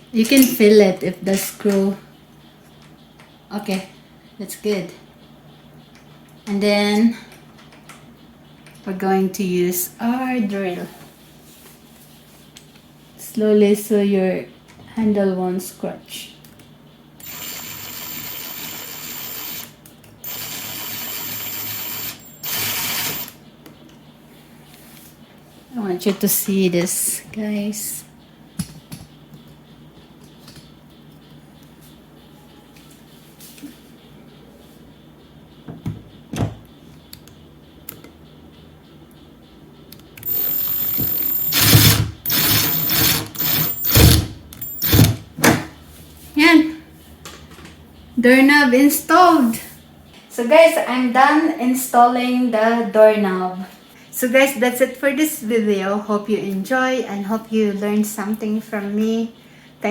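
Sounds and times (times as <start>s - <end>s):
power drill whining: 20.3s - 23.3s, 40.2s - 45.2s.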